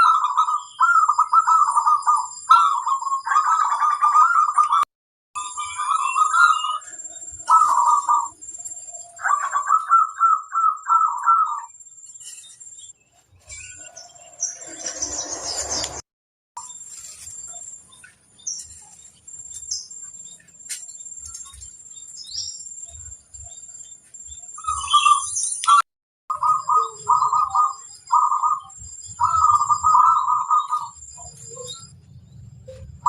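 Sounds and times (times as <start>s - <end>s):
dove cooing: 0.0s - 4.8s, 7.4s - 8.4s, 9.2s - 11.7s, 26.3s - 32.0s.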